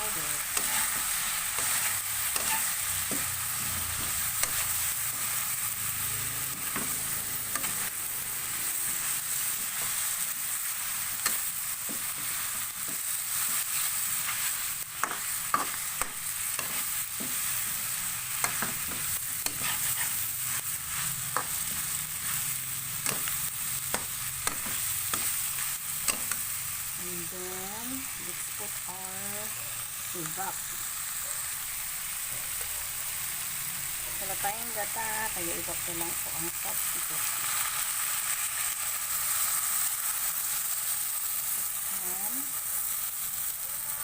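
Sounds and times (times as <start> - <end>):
chicken sizzling in a pan: 0.0 - 44.0
spatula scraping and clicking on pan: 0.5 - 3.3, 18.4 - 20.3, 23.0 - 26.5.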